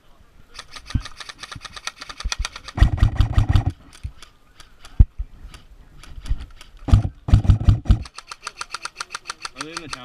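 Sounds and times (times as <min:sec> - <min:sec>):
airsoft gun firing bursts: 0:00.6 - 0:03.8, 0:06.9 - 0:10.0.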